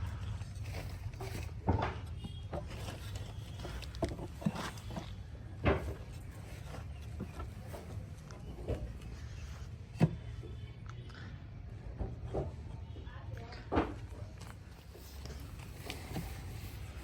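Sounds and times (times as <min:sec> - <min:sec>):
wooden knocks and clunks: 0:00.1 - 0:09.2, 0:09.8 - 0:10.7, 0:11.8 - 0:13.0, 0:13.7 - 0:14.7.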